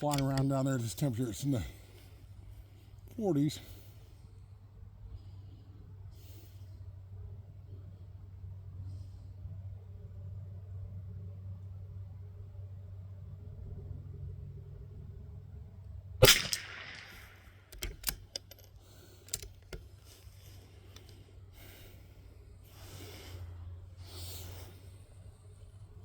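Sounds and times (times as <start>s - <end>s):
metallic clicks of rifle bolt: 0.0s - 1.0s, 16.2s - 20.3s, 20.9s - 21.2s
rifle shot: 16.2s - 18.1s
soft breathing: 18.8s - 26.0s.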